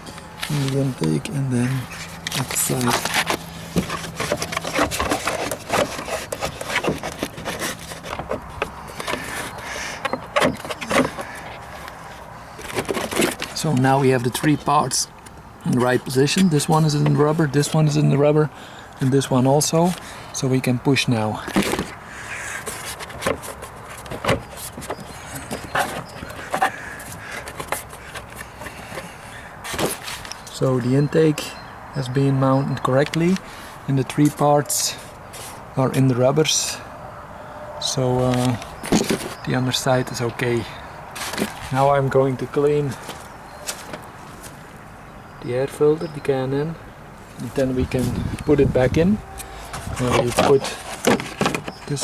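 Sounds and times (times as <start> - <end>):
plastic scraping and clicking: 1.9 - 17.8, 21.4 - 22.0, 22.6 - 29.1, 38.2 - 39.5, 47.6 - 52.0.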